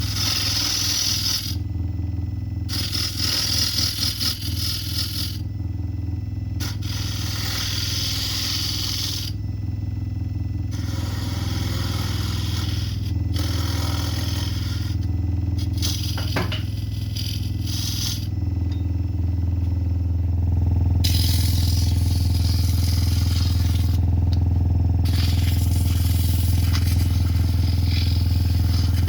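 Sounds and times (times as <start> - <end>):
turning tool scraping wood: 0.0 - 1.6, 2.7 - 5.4, 6.6 - 9.4, 10.7 - 18.4, 21.0 - 24.4, 25.0 - 29.0
wood lathe motor hum: 0.0 - 1.9, 2.7 - 5.5, 6.6 - 9.8, 10.6 - 29.0.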